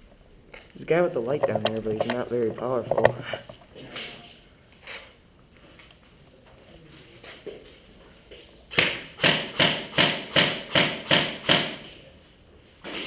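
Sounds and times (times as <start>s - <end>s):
airsoft gun shots: 8.7s - 11.9s.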